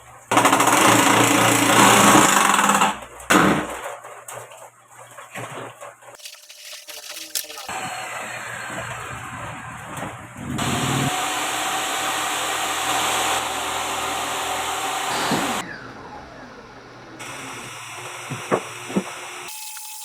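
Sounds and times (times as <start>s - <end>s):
circular saw motor whining: 19.5s - 20.0s.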